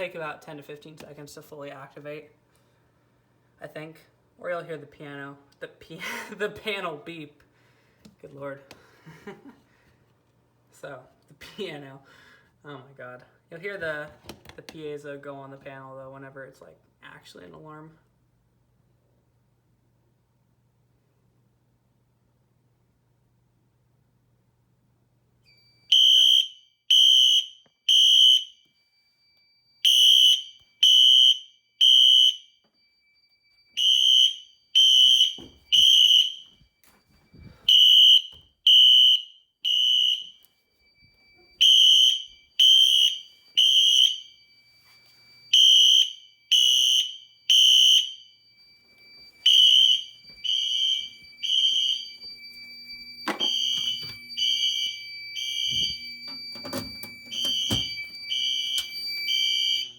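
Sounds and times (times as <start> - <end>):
fire alarm horns: 25.4 - 59.9.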